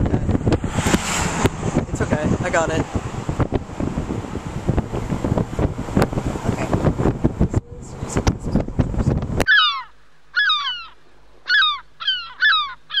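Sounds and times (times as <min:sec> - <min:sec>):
wind noise: 0:00.0 - 0:09.6
bird calls with falling notes: 0:09.5 - 0:13.0.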